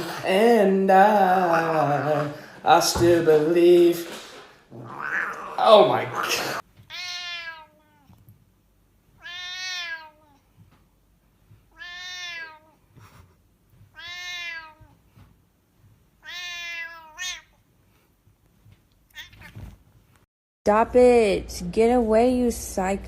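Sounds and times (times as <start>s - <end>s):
cat meowing: 4.8s - 5.8s, 6.8s - 8.2s, 9.1s - 10.4s, 11.7s - 12.8s, 13.9s - 15.0s, 16.2s - 17.6s, 19.1s - 19.7s.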